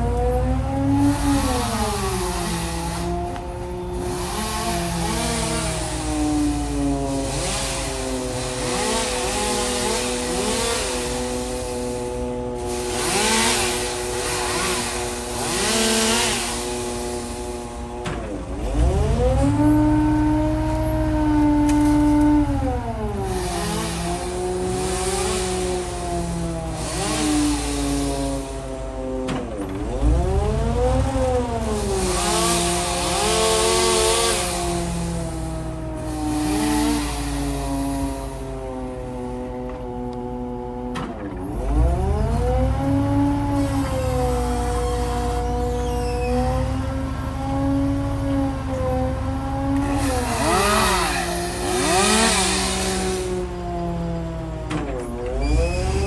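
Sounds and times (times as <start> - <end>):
engine-driven machinery revving: 0.0 - 56.0.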